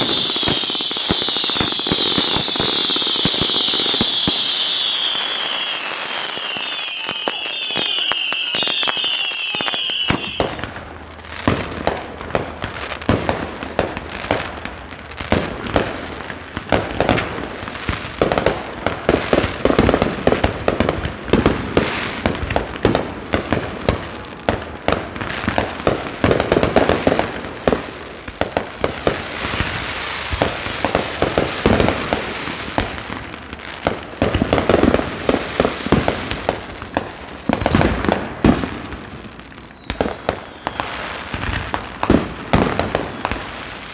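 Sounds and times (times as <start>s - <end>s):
fireworks whistles: 0.0s - 10.8s, 21.4s - 43.9s
fireworks bangs and crackles: 0.0s - 43.9s.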